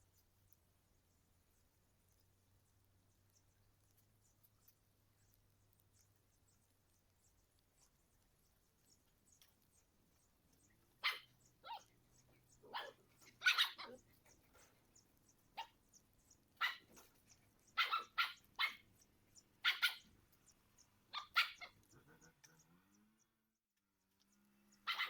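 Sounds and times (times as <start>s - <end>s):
dog barking: 11.0s - 11.9s, 12.6s - 14.0s, 15.6s - 15.8s, 16.6s - 17.0s, 17.8s - 18.8s, 19.6s - 20.0s, 21.1s - 22.6s.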